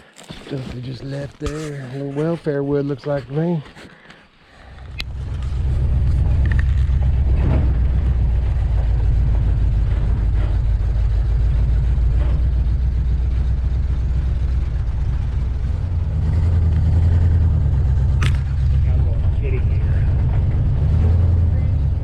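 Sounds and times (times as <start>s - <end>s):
vehicle engine droning: 4.6s - 22.0s.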